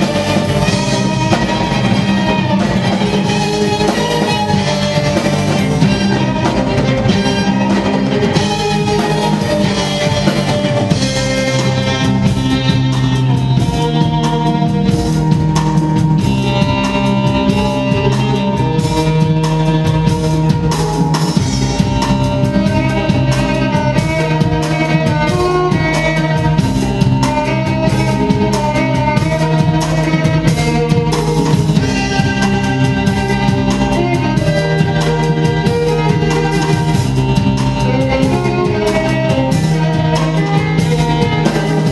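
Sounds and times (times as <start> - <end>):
bowed strings: 0.0 - 41.9
drum kit beat: 0.0 - 41.9
guitar: 0.0 - 41.9.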